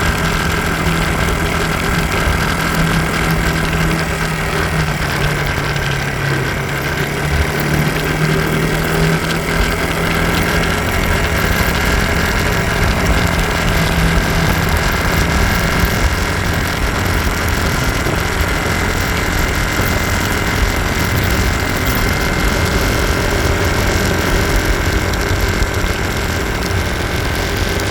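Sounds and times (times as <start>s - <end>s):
scooter engine idling with rattle: 0.0s - 27.9s.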